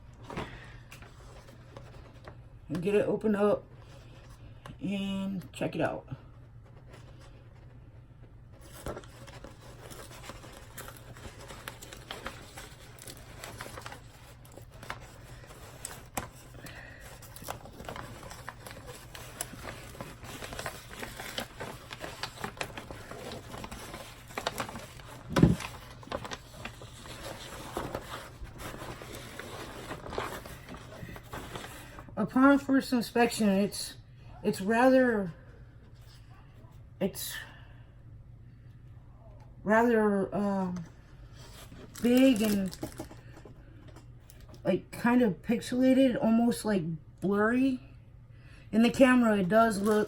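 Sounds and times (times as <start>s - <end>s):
canvas rustling and crinkling: 8.6s - 32.0s.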